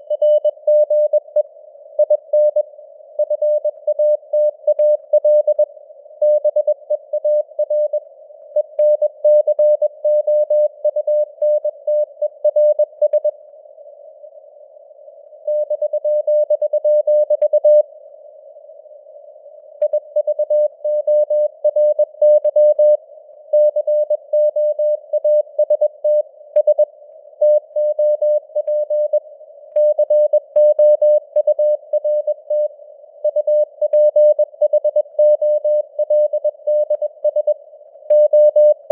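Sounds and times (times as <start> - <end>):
morse code beeps: 33.3 - 38.9.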